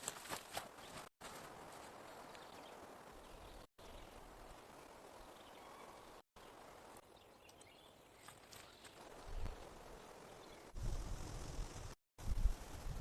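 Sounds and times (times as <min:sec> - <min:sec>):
faint outdoor hiss: 0:01.2 - 0:13.0.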